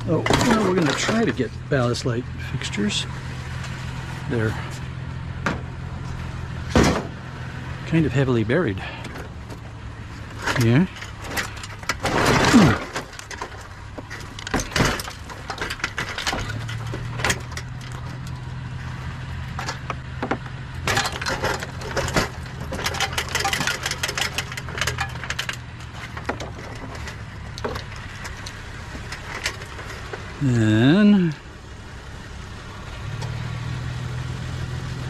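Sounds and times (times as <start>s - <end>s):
scrap pieces clattering: 10.3s - 18.4s, 20.8s - 30.2s.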